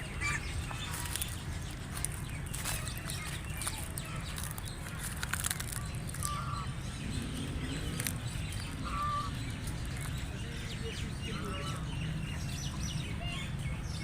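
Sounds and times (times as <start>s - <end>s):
ducks calling: 0.0s - 10.3s
steady low rumble: 0.0s - 13.0s.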